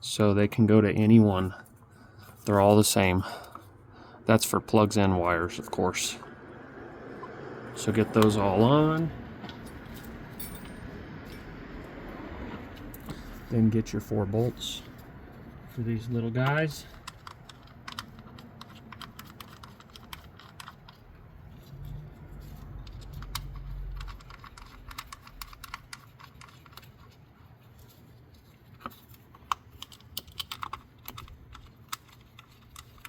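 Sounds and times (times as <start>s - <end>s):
bolts clicking and tapping: 7.2s - 27.2s, 28.7s - 33.0s.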